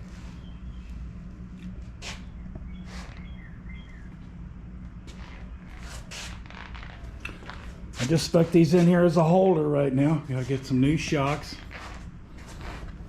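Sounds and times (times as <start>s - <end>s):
steady low hum: 0.0s - 13.0s
faint bird chirps: 2.3s - 4.2s.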